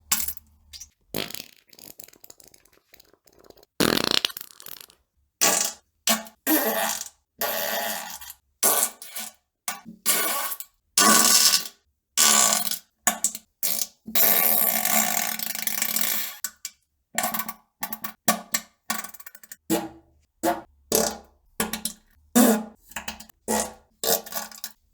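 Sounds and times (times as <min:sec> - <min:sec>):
rapid farts: 0:01.1 - 0:05.0.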